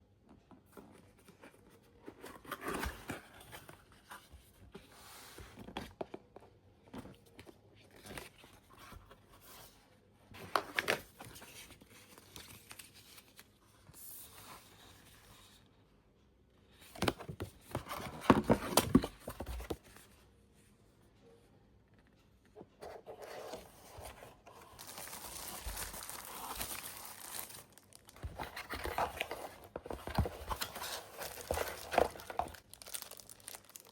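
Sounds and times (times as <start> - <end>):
paper and plastic wrapping tearing: 24.8 - 28.8, 31.1 - 33.9
box scraping and knocking: 28.2 - 32.5.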